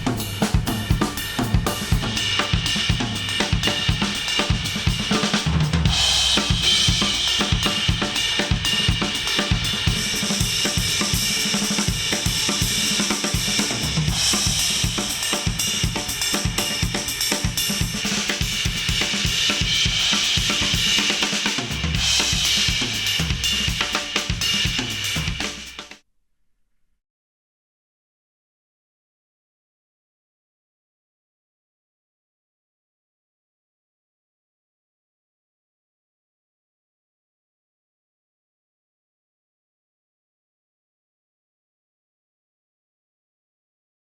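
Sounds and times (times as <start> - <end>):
drum-heavy instrumental music: 0.0 - 26.0.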